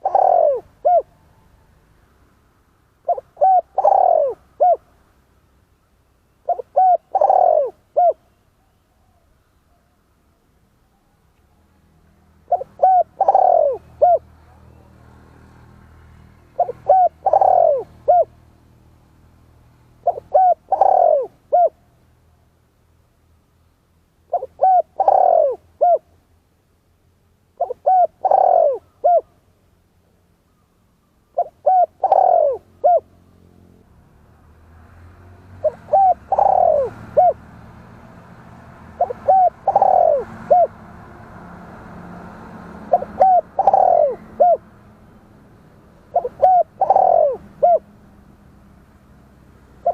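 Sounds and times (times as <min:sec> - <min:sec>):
dove cooing: 0:00.0 - 0:01.7, 0:03.0 - 0:04.9, 0:06.4 - 0:08.4, 0:12.4 - 0:14.9, 0:16.5 - 0:18.5, 0:20.0 - 0:21.9, 0:24.3 - 0:26.1, 0:27.6 - 0:29.4, 0:31.3 - 0:33.2, 0:35.6 - 0:37.5, 0:38.9 - 0:40.8, 0:42.7 - 0:44.7, 0:46.0 - 0:47.9.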